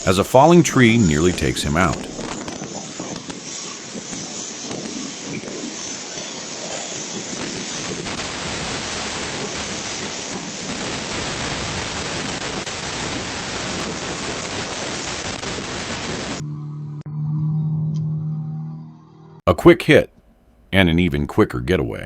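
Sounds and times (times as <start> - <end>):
wind and rain on microphone: 0.0 - 16.4.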